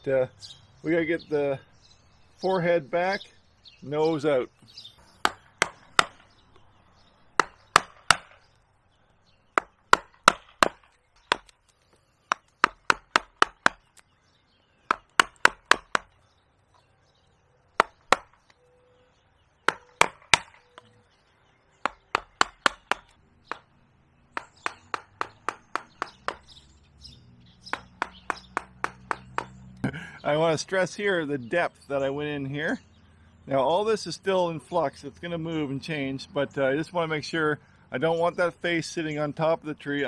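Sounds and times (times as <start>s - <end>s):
mallet striking carving gouge: 5.1s - 6.3s, 7.4s - 8.4s, 9.6s - 14.0s, 14.9s - 16.1s, 17.8s - 18.4s, 19.7s - 20.8s, 21.8s - 23.7s, 24.4s - 26.6s, 27.7s - 29.6s.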